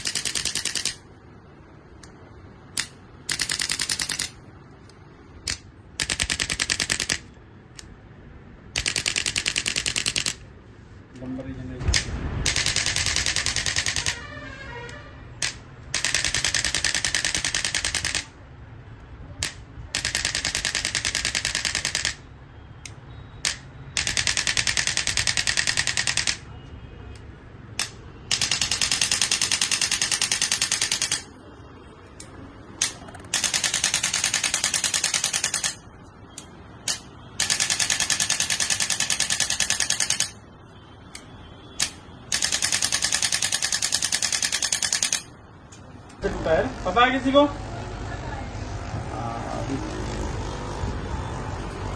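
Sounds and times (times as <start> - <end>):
electric massager rattling: 0.0 - 1.0, 46.2 - 51.9.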